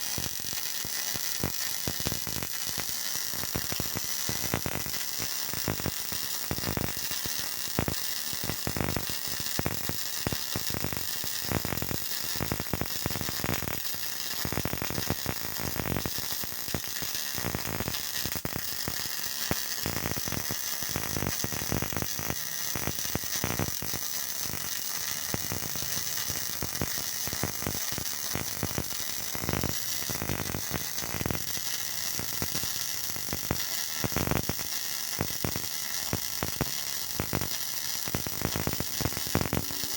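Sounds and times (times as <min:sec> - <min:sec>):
electric arc welding crackle: 0:00.0 - 0:39.9.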